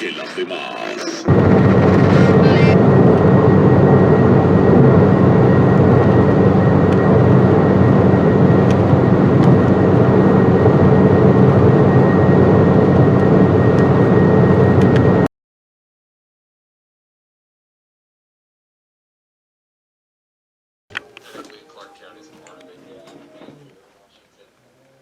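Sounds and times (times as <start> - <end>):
radio static: 0.0 - 2.8.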